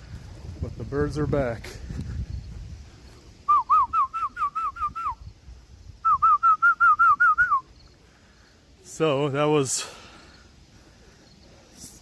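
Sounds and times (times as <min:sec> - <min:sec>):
quick whistled notes: 0:03.5 - 0:05.2, 0:06.0 - 0:07.7.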